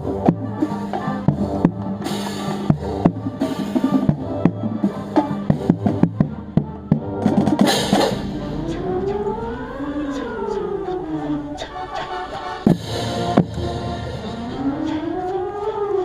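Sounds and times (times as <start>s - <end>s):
marching band playing: 0.0s - 16.0s
cymbal crashes: 7.6s - 9.4s, 12.7s - 14.7s.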